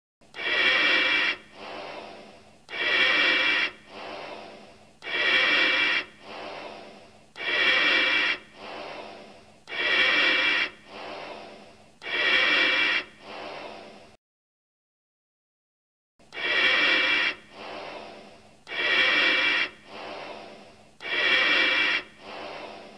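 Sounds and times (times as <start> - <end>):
breathing through gas mask: 0.3 - 14.2, 16.3 - 22.9.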